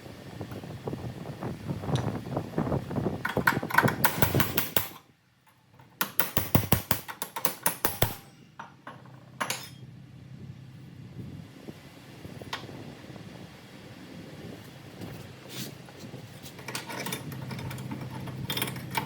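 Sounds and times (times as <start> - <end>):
hand tools tapping on metal: 3.2 - 9.8.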